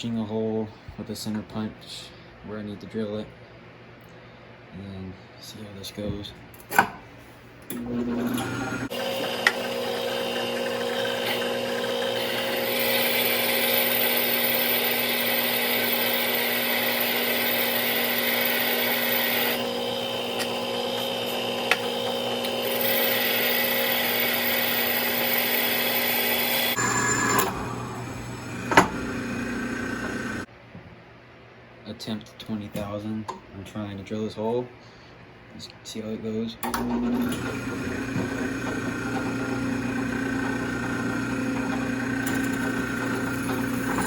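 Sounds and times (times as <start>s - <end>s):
drill press motor humming: 7.7s - 30.5s, 36.6s - 44.0s
drill bit cutting metal: 7.8s - 30.4s, 36.8s - 44.0s.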